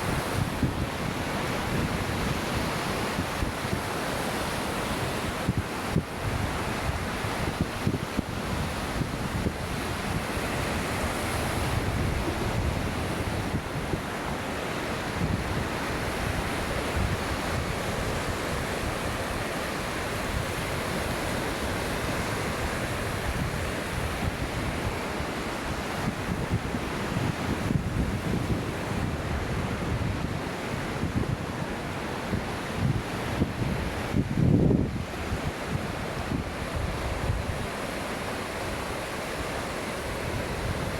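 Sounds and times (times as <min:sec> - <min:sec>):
wind buffeting microphone: 0:00.0 - 0:04.1, 0:05.0 - 0:14.2, 0:15.0 - 0:40.9
waves washing onto beach: 0:00.0 - 0:40.9.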